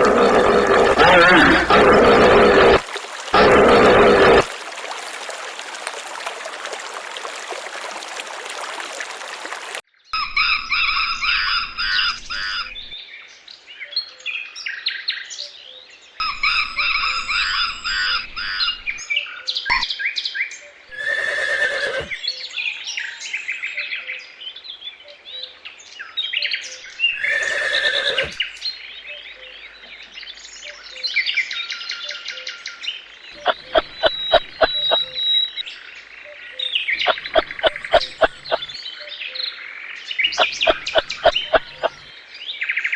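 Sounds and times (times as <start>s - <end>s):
birds chirping and calling: 36.6s - 39.4s, 40.1s - 42.2s.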